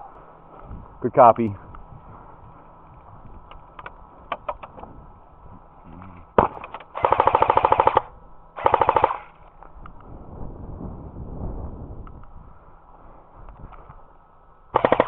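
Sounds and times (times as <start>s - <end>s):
airsoft rifle shots: 6.4s - 9.4s, 14.7s - 15.0s
full-auto burst: 6.4s - 9.4s, 14.7s - 15.0s.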